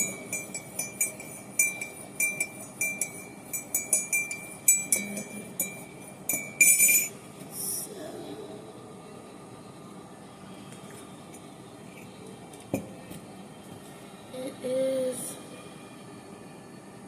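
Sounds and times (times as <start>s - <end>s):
light metallic clinking: 0.0s - 7.2s.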